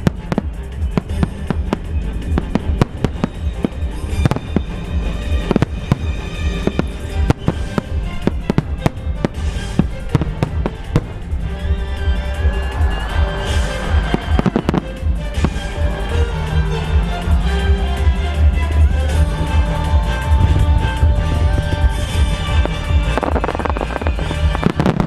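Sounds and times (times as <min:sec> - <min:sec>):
firework bangs: 0:00.0 - 0:15.8, 0:20.4 - 0:25.0
deep rumble of booms: 0:20.3 - 0:25.0.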